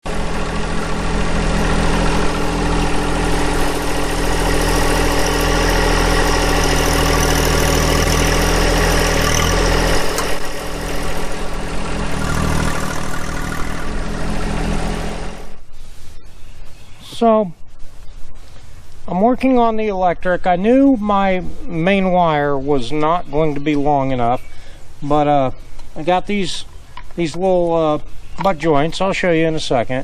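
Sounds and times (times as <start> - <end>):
tractor diesel engine running: 0.0 - 15.7.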